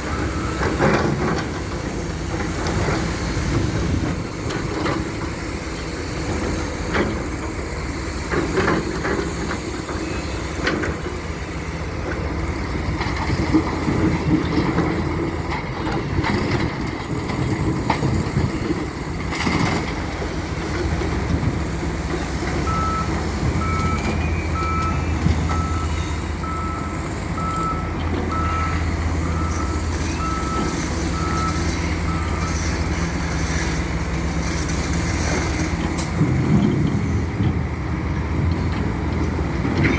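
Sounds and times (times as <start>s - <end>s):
diesel engine under load: 0.0s - 39.9s
reversing alarm beeps: 0.1s - 0.7s, 22.6s - 32.9s.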